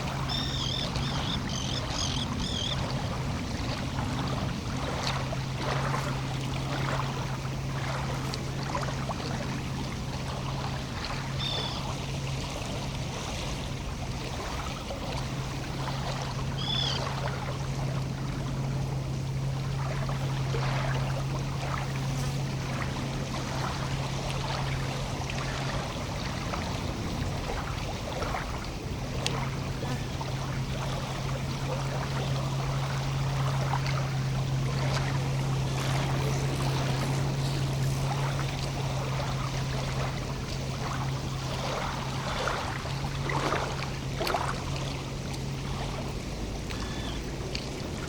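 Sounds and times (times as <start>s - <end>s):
steady low hum: 0.0s - 48.0s
water lapping along shore: 0.0s - 48.0s
bird chirping: 0.3s - 2.8s.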